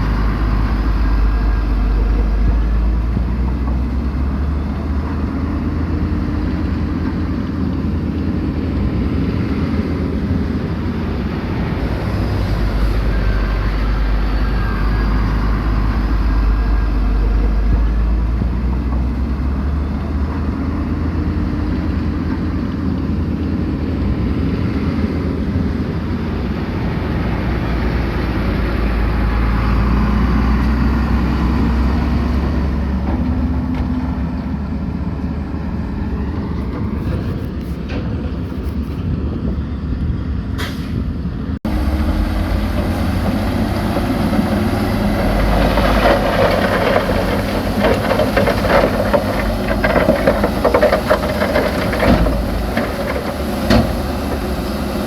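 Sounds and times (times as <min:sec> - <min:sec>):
diesel machinery rumbling: 0:00.0 - 0:55.0
rattling clatter: 0:42.4 - 0:54.6.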